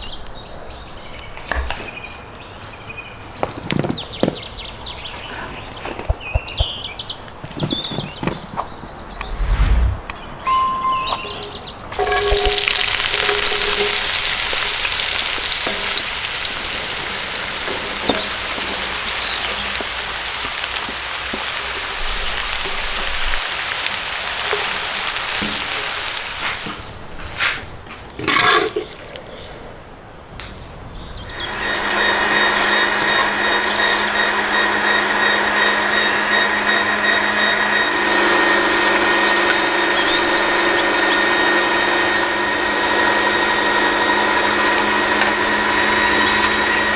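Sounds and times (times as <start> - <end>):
food sizzling in a pan: 12.0 - 27.0
small motor humming and whining: 31.3 - 46.9.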